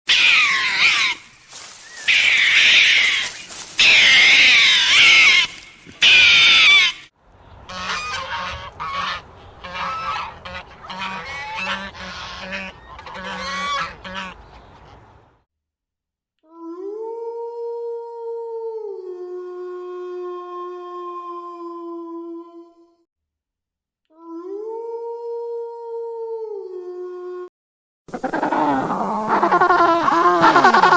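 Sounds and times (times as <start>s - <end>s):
geese honking: 2.0s - 15.4s.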